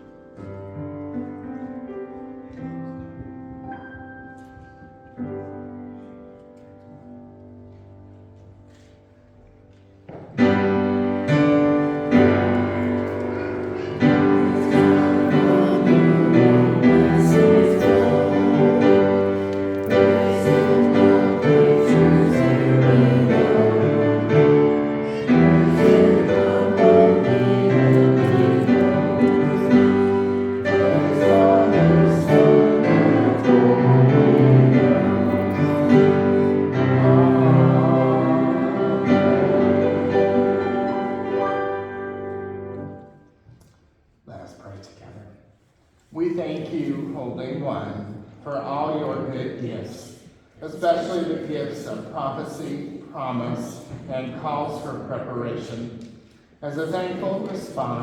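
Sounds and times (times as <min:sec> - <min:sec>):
music: 0:00.0 - 0:43.9.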